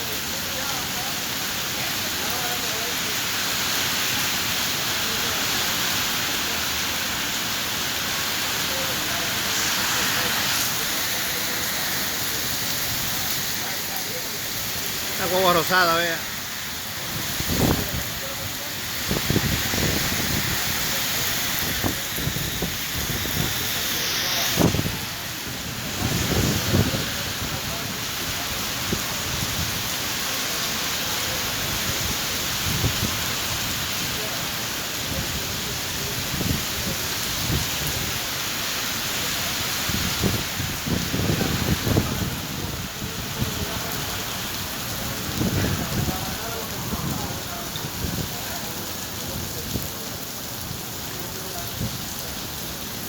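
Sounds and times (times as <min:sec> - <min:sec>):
heavy rain falling: 0:00.0 - 0:53.0.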